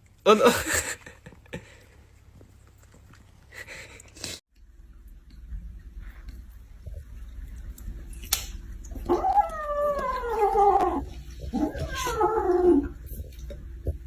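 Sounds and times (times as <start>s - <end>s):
dog howling: 9.0s - 13.1s.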